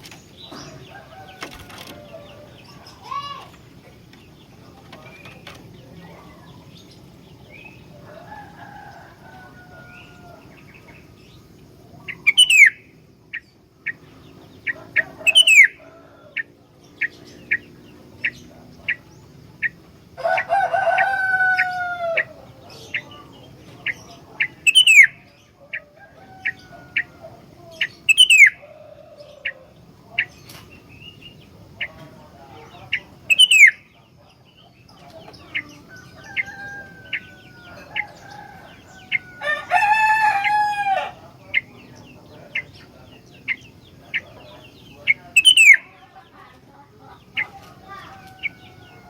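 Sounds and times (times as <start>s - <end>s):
rooster crowing: 0.6s - 3.2s, 7.9s - 10.7s, 14.8s - 16.6s, 20.2s - 22.7s, 24.7s - 29.8s, 35.8s - 41.5s, 47.8s - 49.0s
bird whistled song: 12.0s - 13.5s, 15.2s - 15.8s, 24.4s - 25.3s, 27.8s - 28.6s, 33.3s - 33.9s, 45.1s - 45.9s.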